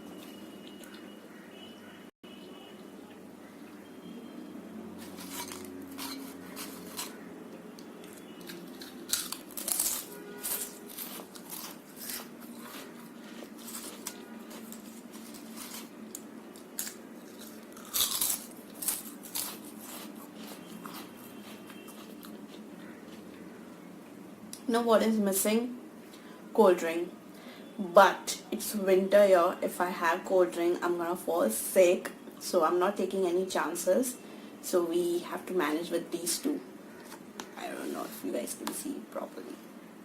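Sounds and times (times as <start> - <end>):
chewing and crunching food: 5.0 - 7.3, 8.0 - 23.6.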